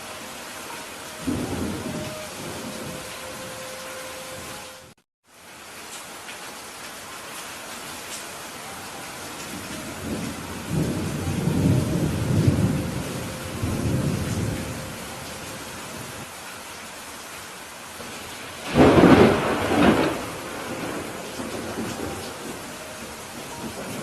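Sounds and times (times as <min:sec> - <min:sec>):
steady rain: 0:00.0 - 0:24.0
rolling thunder: 0:01.2 - 0:03.1, 0:09.5 - 0:16.2, 0:18.6 - 0:24.0
sharp thunderclap: 0:18.6 - 0:22.5.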